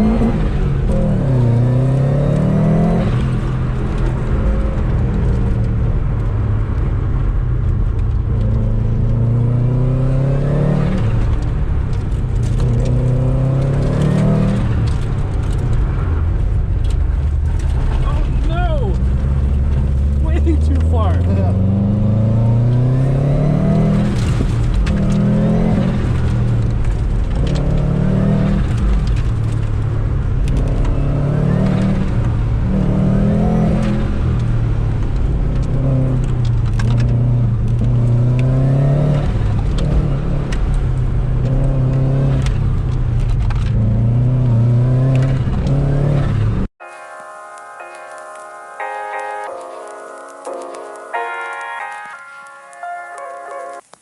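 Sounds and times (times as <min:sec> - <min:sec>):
car engine revving: 0:00.0 - 0:46.8
music: 0:46.8 - 0:54.0.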